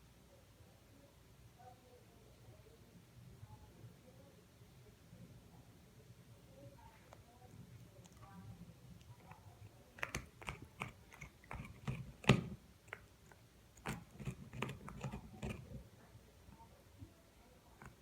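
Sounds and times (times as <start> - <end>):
puppy gnawing on antler: 7.7 - 15.8, 17.8 - 18.0
teeth clicking and scraping: 7.8 - 15.8, 17.8 - 18.0.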